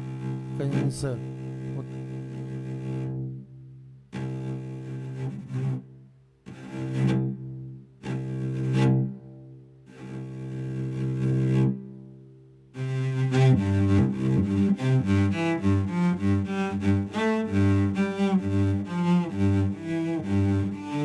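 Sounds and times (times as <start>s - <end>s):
keyboard cello notes: 0.0s - 2.7s, 12.8s - 21.0s.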